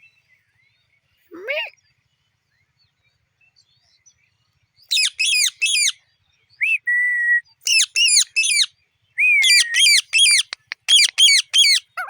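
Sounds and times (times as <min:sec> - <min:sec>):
parakeet harsh calls: 0:04.9 - 0:05.9, 0:07.7 - 0:08.7, 0:09.4 - 0:12.0
parakeet whistle: 0:04.9 - 0:05.9, 0:09.4 - 0:11.8.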